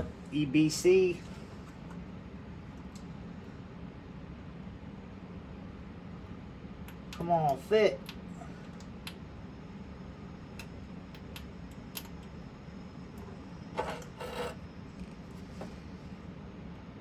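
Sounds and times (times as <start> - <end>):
scrape: 13.8 - 14.6.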